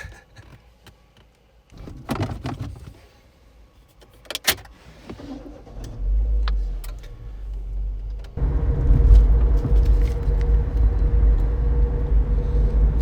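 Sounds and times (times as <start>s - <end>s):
low steady rumble: 5.6s - 13.0s
clicks and knocks inside car: 8.2s - 11.0s.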